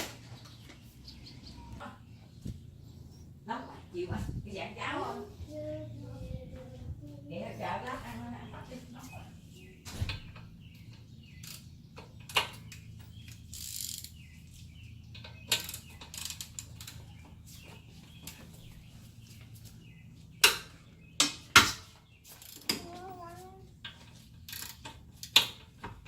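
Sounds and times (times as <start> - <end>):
socket ratchet clicking: 13.5 - 14.2.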